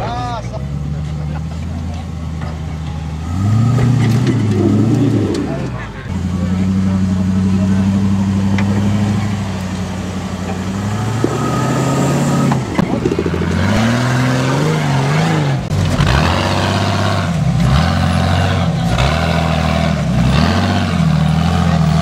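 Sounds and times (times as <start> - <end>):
engine revving: 0.0 - 22.0
sharp knocks: 11.1 - 14.0.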